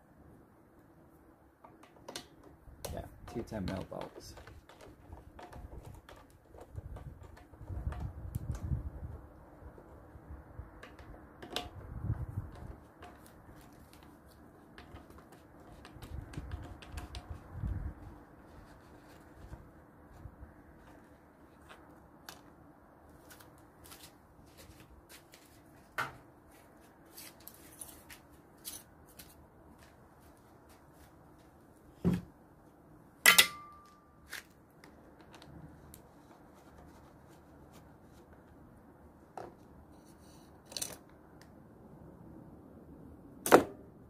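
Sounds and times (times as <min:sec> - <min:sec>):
hand tools clicking and knocking: 0:01.6 - 0:08.6, 0:12.5 - 0:18.6.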